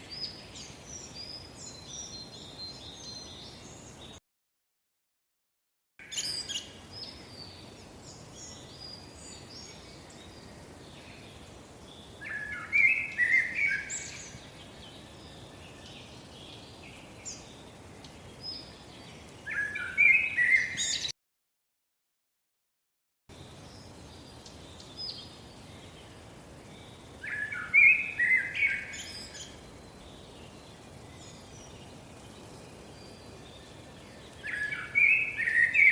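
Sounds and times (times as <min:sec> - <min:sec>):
faint outdoor background hiss: 0:00.0 - 0:04.2, 0:06.0 - 0:21.1, 0:23.3 - 0:35.9
birds chirping: 0:06.0 - 0:21.2, 0:23.3 - 0:35.9.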